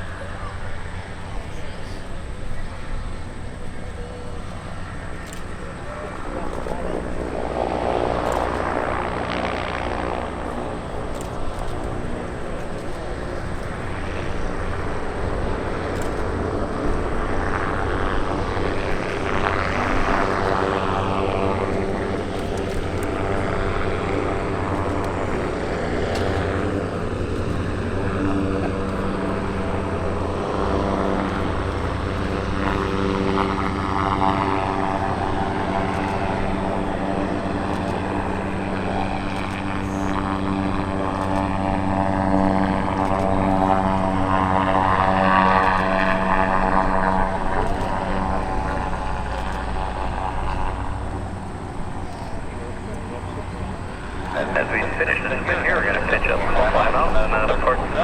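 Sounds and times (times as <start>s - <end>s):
airship engines droning: 0.0s - 58.0s.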